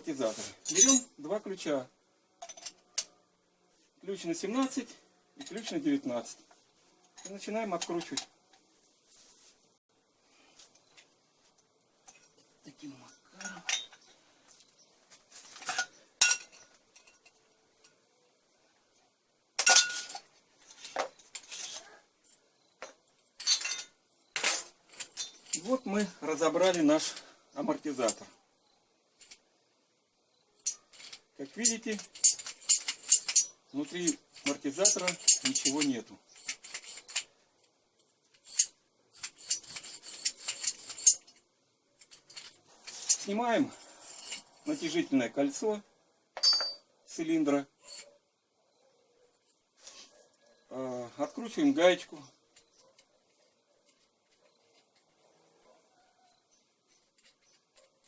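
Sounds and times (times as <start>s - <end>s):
wrenches and metal parts clinking: 0.1s - 1.3s, 2.4s - 3.2s, 4.1s - 8.7s, 12.0s - 18.0s, 19.6s - 28.4s, 29.1s - 29.5s, 30.6s - 45.7s, 46.4s - 48.2s, 51.2s - 55.3s, 56.5s - 58.0s.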